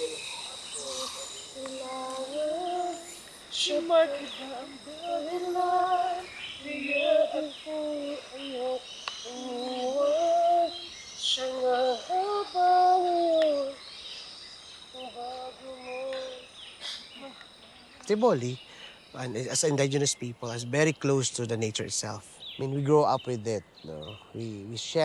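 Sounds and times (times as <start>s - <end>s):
high voice singing: 0.0s - 13.8s, 15.0s - 16.5s
faint high background tone: 0.0s - 25.0s.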